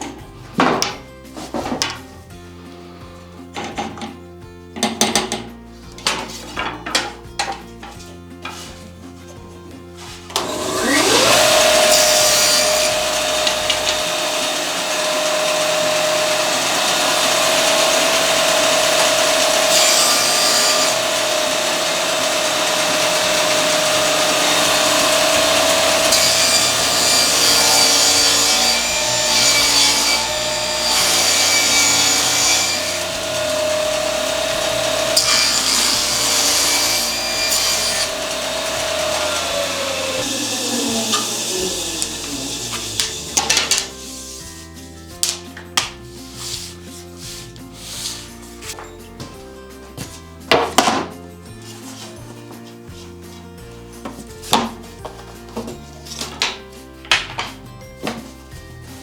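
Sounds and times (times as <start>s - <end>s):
table saw cutting wood: 10.0s - 45.4s, 46.2s - 48.8s.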